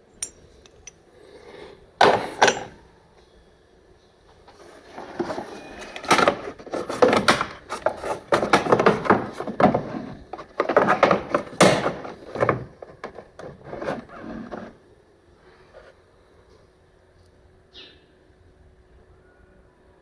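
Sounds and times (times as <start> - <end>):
hard objects knocking and scraping: 2.0 - 2.8, 4.5 - 14.8.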